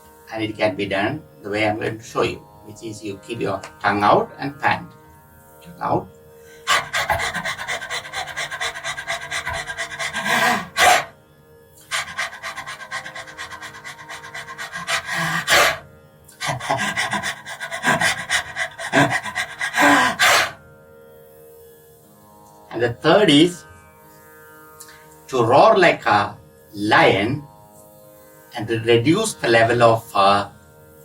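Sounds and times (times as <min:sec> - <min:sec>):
man panting rapidly: 0:06.6 - 0:11.1, 0:11.9 - 0:15.8, 0:16.4 - 0:20.6.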